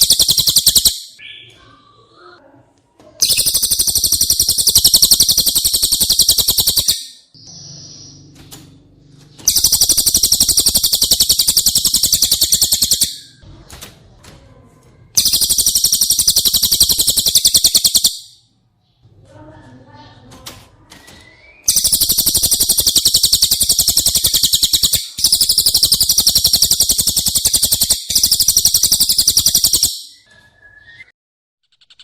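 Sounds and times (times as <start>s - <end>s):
rapid trilled bird song: 0.0s - 1.6s, 3.2s - 13.4s, 15.1s - 19.1s, 21.0s - 30.3s, 30.9s - 32.0s
soft bird calls: 20.9s - 30.5s.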